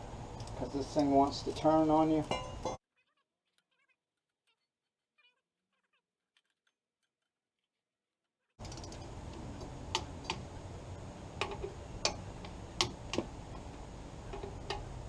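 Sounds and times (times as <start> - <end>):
low background hum: 8.6 - 15.0.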